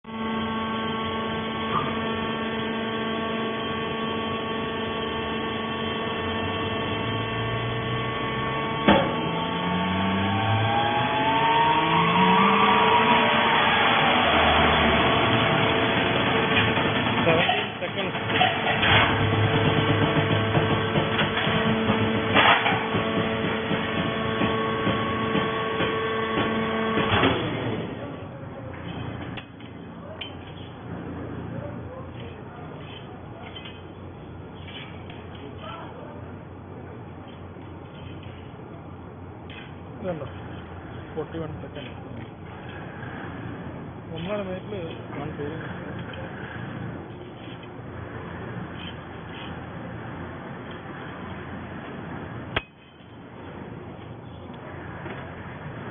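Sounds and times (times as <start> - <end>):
baler motor humming: 0.1 - 32.1
machine whine: 0.1 - 55.9
machine clanks and clatter: 13.4 - 27.9, 32.1 - 35.8.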